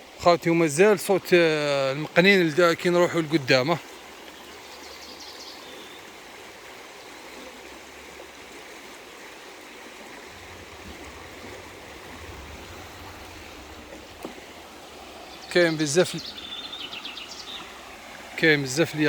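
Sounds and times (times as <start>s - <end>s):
stream rushing over rocks: 6.1s - 19.0s
low rumble: 10.0s - 18.4s.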